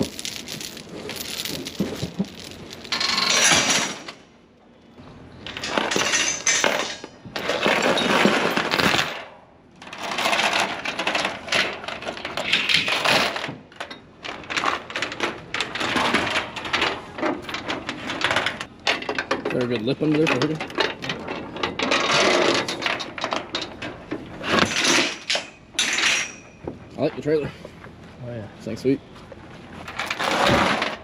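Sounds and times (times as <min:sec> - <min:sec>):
metal chains clanking and rattling: 0:00.0 - 0:04.3, 0:05.4 - 0:26.7, 0:29.8 - 0:31.0.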